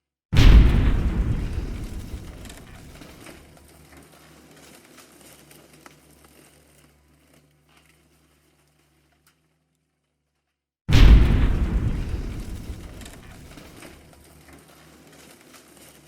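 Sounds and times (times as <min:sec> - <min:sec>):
explosion rumble: 0:00.4 - 0:03.4, 0:10.9 - 0:14.0
debris crackles and pops: 0:00.4 - 0:09.7, 0:10.9 - 0:16.0.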